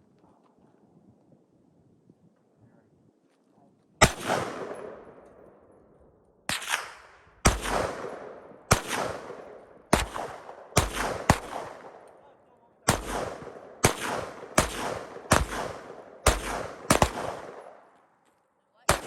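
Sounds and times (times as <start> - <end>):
gunshots with long echo: 4.0 - 5.8, 6.5 - 18.2.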